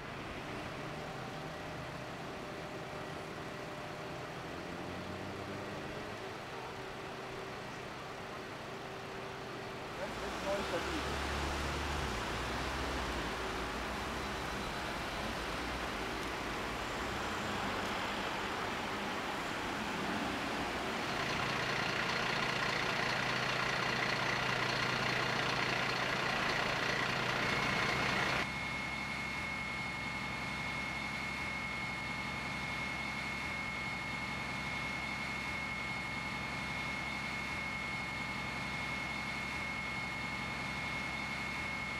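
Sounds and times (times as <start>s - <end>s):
machinery humming: 5.7s - 41.9s
thin high whine: 10.0s - 26.6s.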